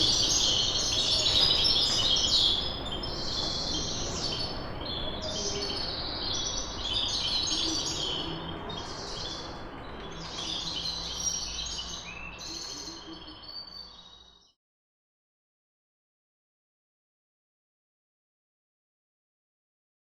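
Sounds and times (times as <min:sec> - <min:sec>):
birds chirping: 0:00.0 - 0:14.3
low city noise: 0:00.0 - 0:14.5.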